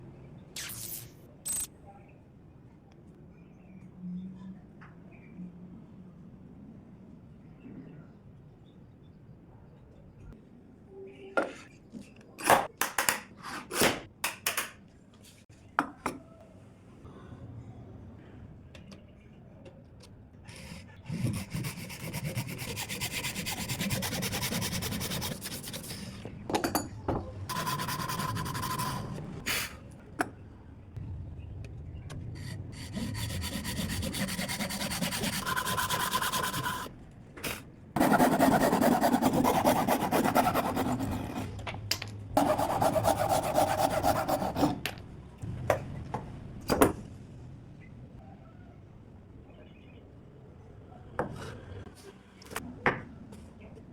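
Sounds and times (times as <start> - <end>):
hand saw rasping through wood: 20.5 - 26.0, 27.5 - 29.2, 32.9 - 36.9, 38.0 - 41.4.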